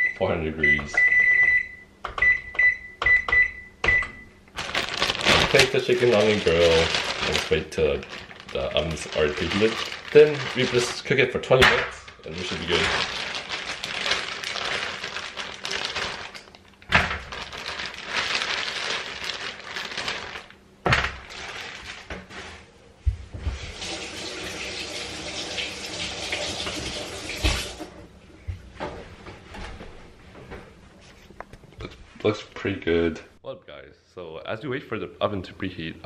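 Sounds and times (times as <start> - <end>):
water running in sink: 23.5 - 28.0.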